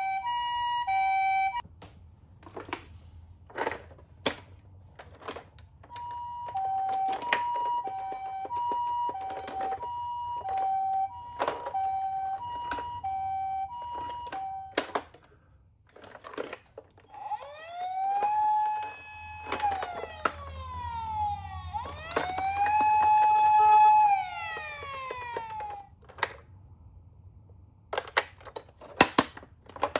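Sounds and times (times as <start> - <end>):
toy siren two-tone: 0.0 - 1.6, 5.9 - 15.0, 17.0 - 25.9
toy siren wailing tone: 0.0 - 1.6, 5.9 - 15.0, 17.0 - 25.9.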